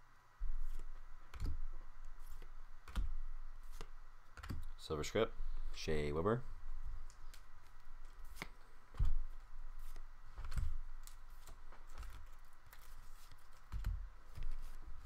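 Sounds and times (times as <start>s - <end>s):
cards clicking and flicking: 0.6s - 4.8s, 7.0s - 14.8s.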